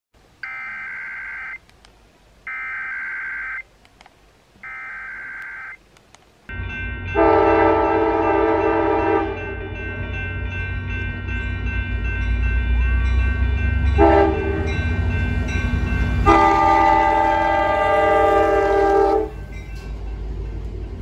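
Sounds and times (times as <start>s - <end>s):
two-tone attention signal: 0.4s - 1.6s, 4.6s - 5.8s
warbling data tones: 0.4s - 1.6s, 2.5s - 3.6s, 4.6s - 5.8s.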